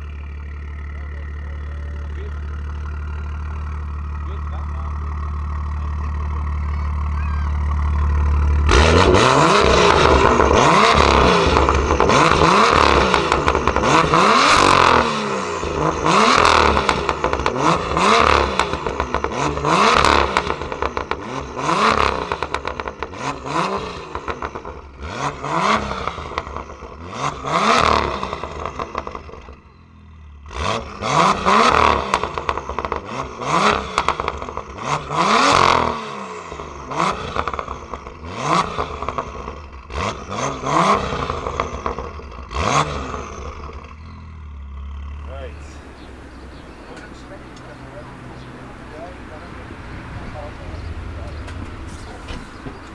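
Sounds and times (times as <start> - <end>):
exhaust crackles and pops: 0.0 - 23.2, 45.2 - 52.9
car engine revving: 0.0 - 29.2, 44.8 - 52.9.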